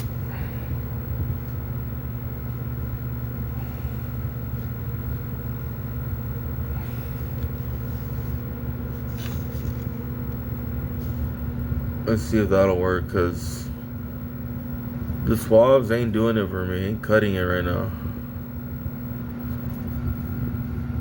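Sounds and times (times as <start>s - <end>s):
low mechanical hum: 0.0s - 21.0s
faint handling noises: 6.8s - 11.5s.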